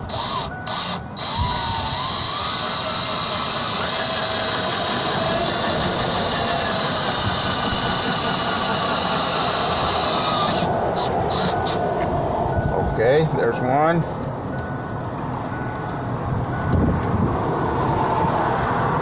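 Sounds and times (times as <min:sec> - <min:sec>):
power drill driving screw: 0:00.0 - 0:11.8.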